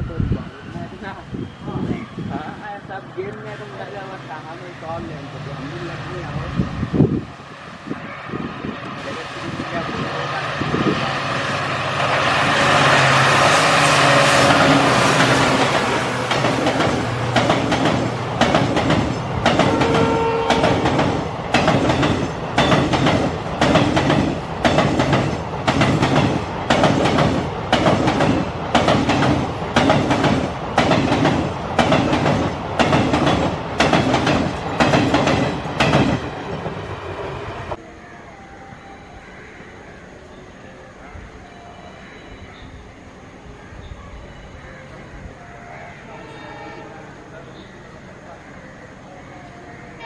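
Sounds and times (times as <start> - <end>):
train wheels clattering over rail joints: 14.4 - 36.8.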